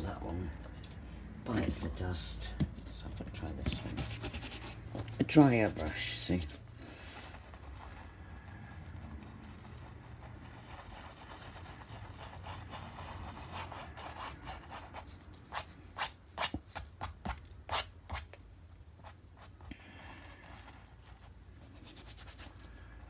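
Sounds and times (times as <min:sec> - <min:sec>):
sharp brush strokes: 0:02.9 - 0:16.5, 0:20.6 - 0:22.8
paintbrush scrubbing: 0:03.0 - 0:16.5, 0:19.4 - 0:23.0.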